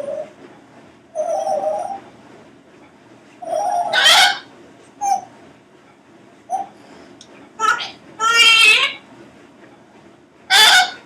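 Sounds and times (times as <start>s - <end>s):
parrot calling: 1.2s - 2.0s, 3.4s - 5.3s, 7.6s - 9.0s, 10.5s - 11.0s.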